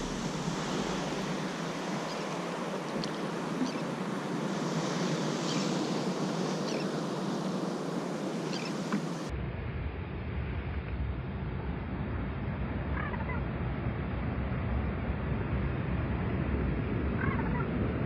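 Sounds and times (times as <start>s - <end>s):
sea noise: 0.0s - 9.3s
wind: 0.0s - 18.0s
water splashes and ticks: 2.1s - 3.8s.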